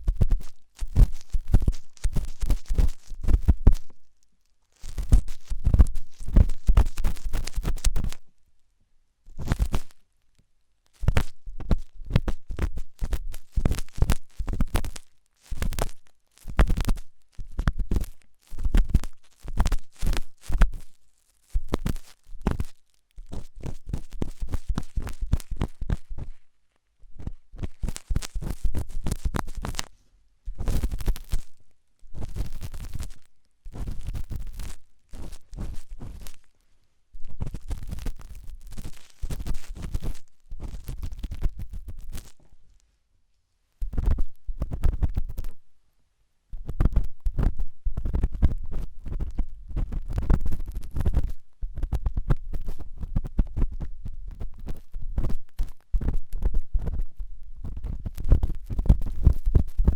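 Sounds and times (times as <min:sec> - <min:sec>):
ear pick scraping inside ear: 0:00.0 - 0:04.0, 0:04.7 - 0:08.2, 0:11.0 - 0:26.4, 0:27.2 - 0:29.9, 0:30.6 - 0:36.5, 0:37.3 - 0:42.5.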